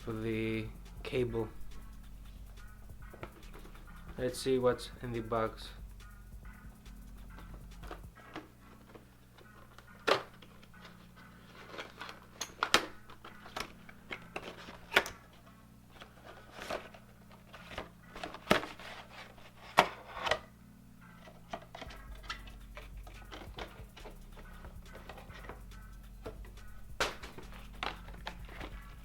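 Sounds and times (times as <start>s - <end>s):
packaging rustling and scraping: 7.2s - 29.0s.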